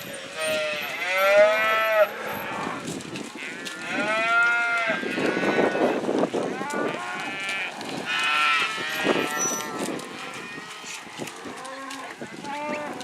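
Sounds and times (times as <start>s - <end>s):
cattle mooing and bawling: 0.4s - 13.0s.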